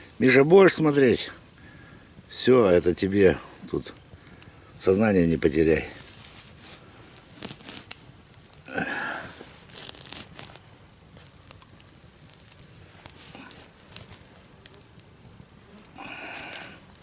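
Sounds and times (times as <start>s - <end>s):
sharp crackles: 0.0s - 17.0s
crinkling and rustling: 5.9s - 15.1s, 15.7s - 17.0s.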